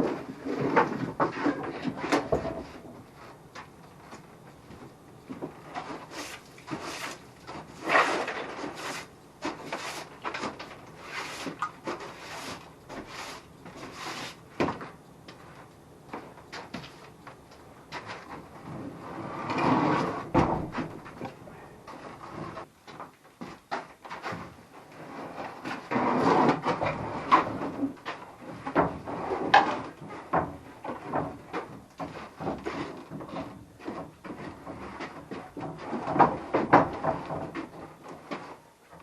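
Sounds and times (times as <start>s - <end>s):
wooden cupboard scraping: 5.3s - 15.6s, 17.9s - 22.7s, 24.1s - 39.0s
wooden cupboard knocking and bumping: 20.3s - 21.0s, 30.4s - 37.7s.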